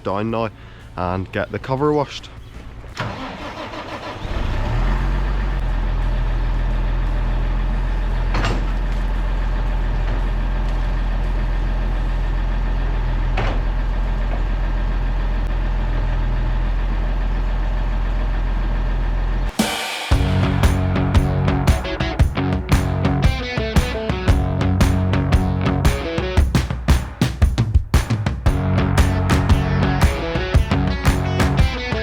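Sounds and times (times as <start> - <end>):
farm machinery engine drone: 3.0 - 19.5, 28.5 - 31.8
even hiss: 19.5 - 23.1.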